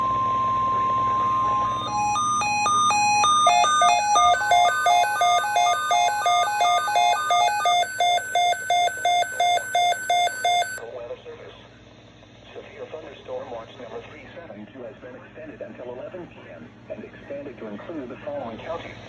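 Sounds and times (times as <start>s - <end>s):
steady warning alarm tone: 0.0s - 10.8s
rapid electronic alert beeps: 1.1s - 10.8s.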